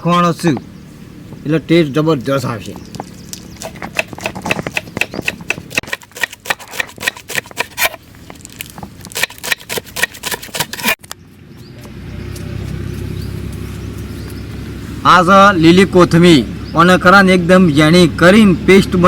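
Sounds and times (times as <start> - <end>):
knife chopping on a board: 3.6 - 8.0.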